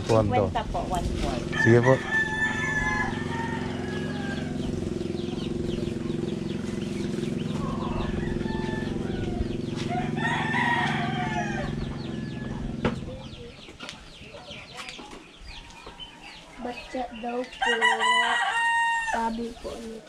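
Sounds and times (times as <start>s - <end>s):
steady low hum: 0.0s - 13.7s
roosters crowing: 1.2s - 13.4s, 14.4s - 20.0s.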